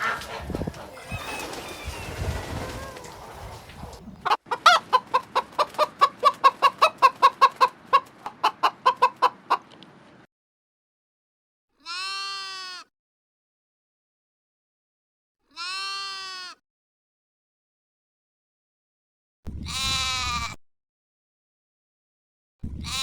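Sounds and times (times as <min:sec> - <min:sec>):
drawn-out animal call: 0:00.0 - 0:09.8
chicken clucking: 0:00.0 - 0:10.0.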